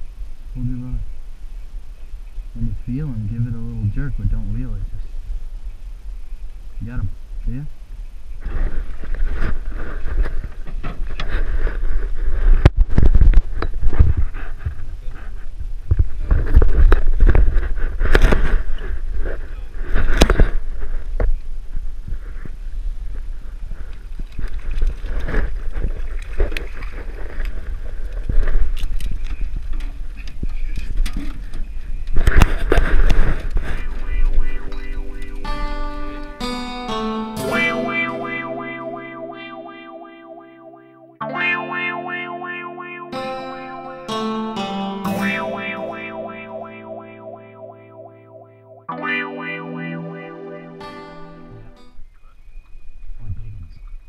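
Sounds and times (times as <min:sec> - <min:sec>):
wind rumble on microphone: 0:00.0 - 0:34.6, 0:52.8 - 0:54.0
guitar music: 0:33.2 - 0:52.0.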